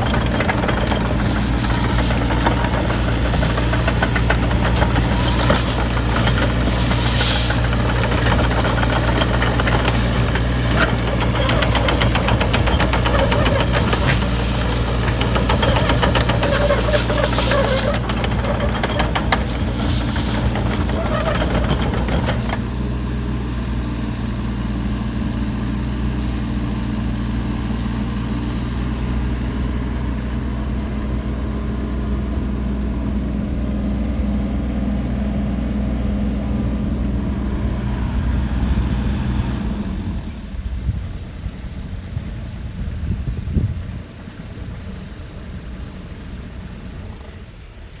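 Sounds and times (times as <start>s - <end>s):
diesel engine idling: 0.0s - 48.0s.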